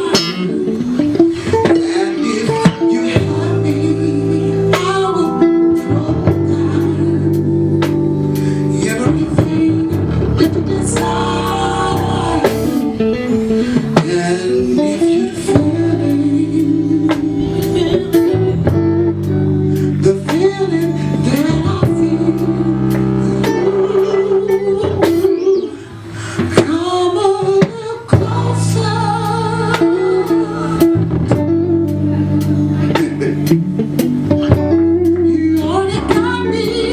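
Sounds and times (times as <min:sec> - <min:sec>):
bass: 0:00.0 - 0:36.9
drums keeping a steady beat: 0:00.0 - 0:36.9
electric guitar bending melody: 0:00.0 - 0:36.9
keyboard chords: 0:00.0 - 0:36.9.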